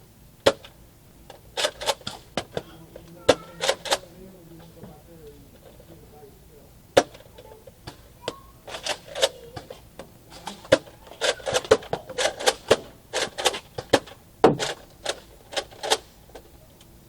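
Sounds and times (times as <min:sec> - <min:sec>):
plastic toy blaster clicks: 0:01.6 - 0:02.2, 0:03.6 - 0:04.0, 0:08.7 - 0:09.7, 0:10.6 - 0:16.1.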